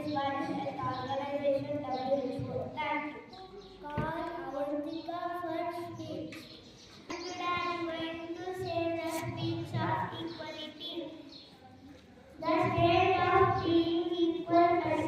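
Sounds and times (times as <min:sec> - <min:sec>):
child singing: 0:12.4 - 0:15.0.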